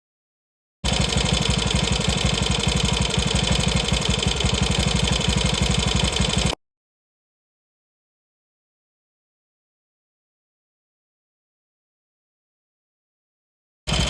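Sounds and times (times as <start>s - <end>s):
motorcycle engine idling: 0.8s - 6.6s.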